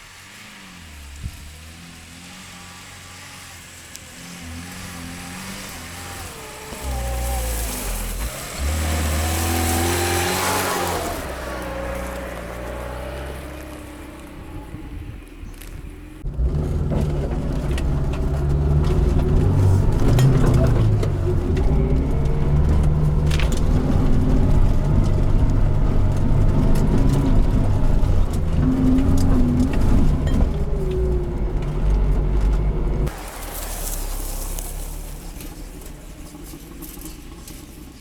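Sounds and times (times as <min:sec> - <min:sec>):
car engine revving under load: 0:00.0 - 0:38.0.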